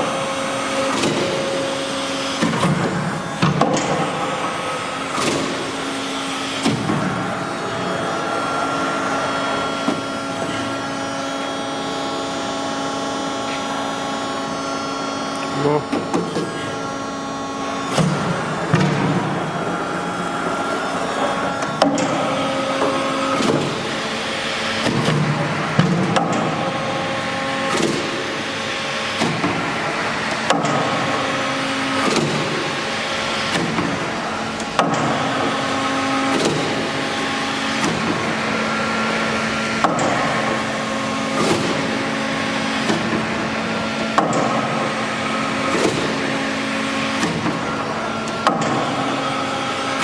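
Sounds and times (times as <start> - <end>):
machine hum: 0.0 - 50.0
machine punch strike: 6.6 - 7.2, 17.9 - 19.6, 30.4 - 31.2, 32.0 - 32.6, 33.4 - 34.0, 34.8 - 35.3, 39.8 - 40.6, 41.3 - 42.0, 44.1 - 44.8, 45.6 - 46.2, 47.2 - 47.7.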